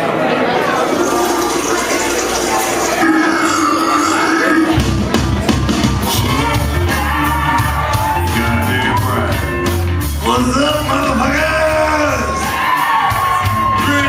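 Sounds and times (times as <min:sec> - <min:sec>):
bass line: 0:00.8 - 0:12.4
drum hits: 0:04.7 - 0:06.8.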